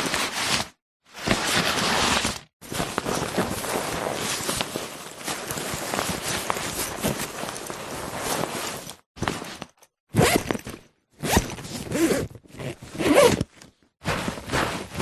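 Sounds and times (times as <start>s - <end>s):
backpack zipper zipping: 10.1s - 10.5s, 11.2s - 13.5s.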